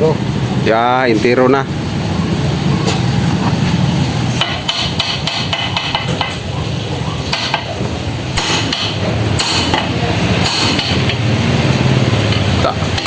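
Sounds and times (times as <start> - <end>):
hammer striking metal: 4.3 - 6.6, 7.2 - 11.3.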